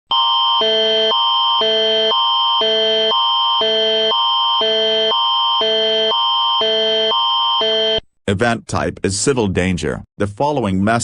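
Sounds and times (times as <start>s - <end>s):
emergency alert tone: 0.1s - 8.0s.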